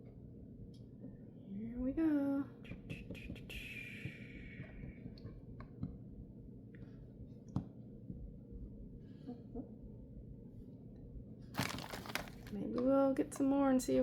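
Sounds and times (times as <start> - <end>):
plastic wrapper tearing: 11.6 - 12.6.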